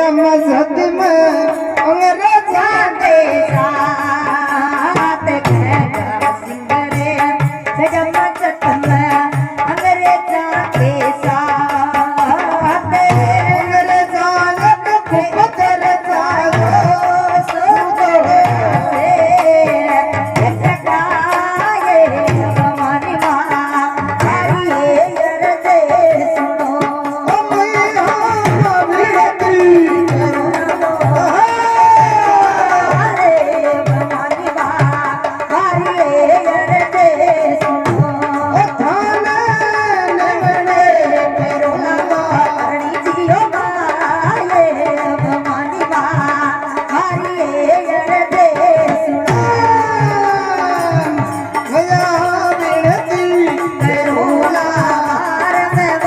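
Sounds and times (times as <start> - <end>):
sung verses: 0.0 - 56.0
hand drum beating: 4.9 - 36.1, 48.4 - 56.0.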